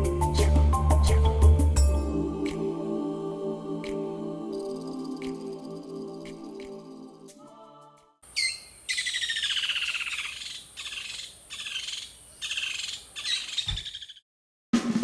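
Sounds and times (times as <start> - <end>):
bird singing trilled phrases: 8.3 - 14.2.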